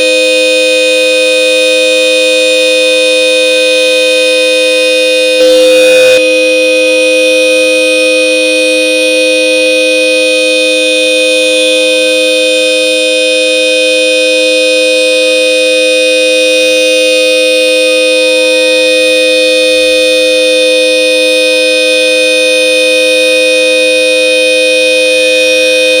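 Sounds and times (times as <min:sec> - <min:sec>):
dual-tone car horn blast: 0:02.5 - 0:13.8.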